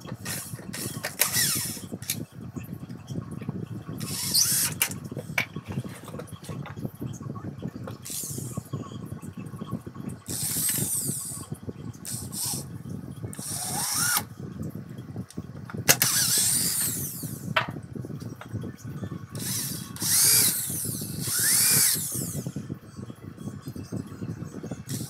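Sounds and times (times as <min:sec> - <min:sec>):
electric power tool running: 0:00.2 - 0:02.2, 0:04.0 - 0:05.0, 0:08.0 - 0:08.4, 0:10.3 - 0:11.4, 0:12.0 - 0:12.7, 0:13.4 - 0:14.3, 0:15.9 - 0:17.4, 0:19.4 - 0:22.4.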